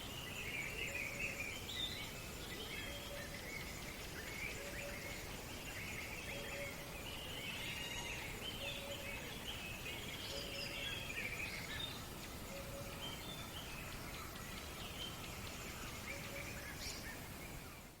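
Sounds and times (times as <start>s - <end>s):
background hiss: 0.0s - 18.0s
birds chirping and warbling: 0.0s - 18.0s.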